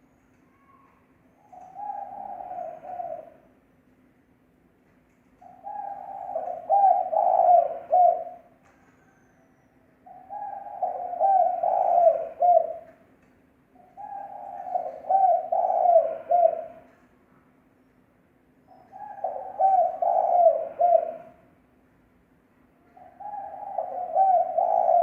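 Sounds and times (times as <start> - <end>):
dove cooing: 1.4 - 3.5, 5.4 - 8.5, 10.0 - 13.0, 13.8 - 16.9, 18.7 - 21.4, 23.0 - 25.0.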